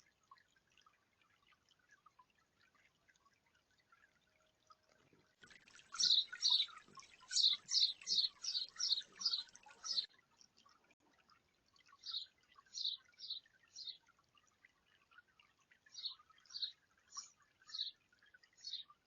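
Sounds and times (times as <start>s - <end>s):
fountain water trickling: 0.0s - 19.0s
quick water splashes: 5.4s - 10.1s.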